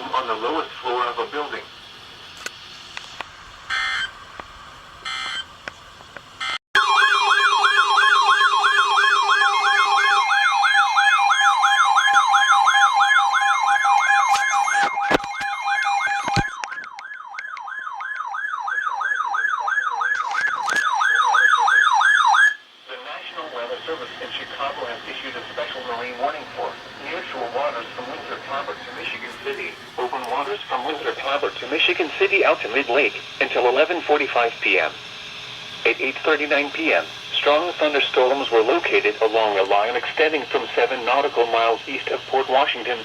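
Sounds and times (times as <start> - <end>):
warbling siren-like alarm: 3.4 - 5.6, 6.4 - 42.6
buzzy data bursts: 22.9 - 43.0.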